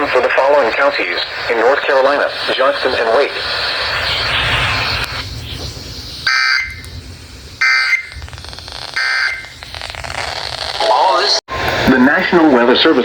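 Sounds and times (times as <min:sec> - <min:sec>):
low radio hum: 0:00.0 - 0:13.0
shrill digital data tones: 0:03.9 - 0:06.9, 0:07.6 - 0:10.9.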